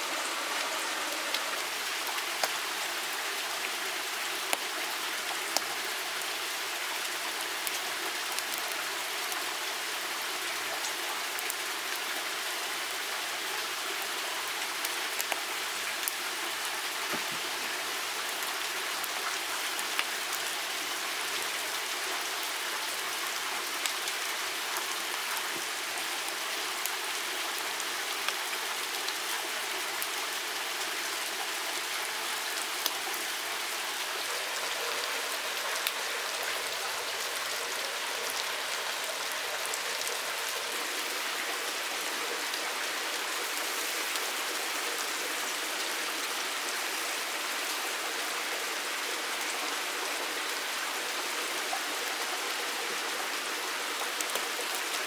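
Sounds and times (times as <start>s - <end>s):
water hissing: 0.0s - 1.8s
small drip-like ticks: 0.1s - 55.0s.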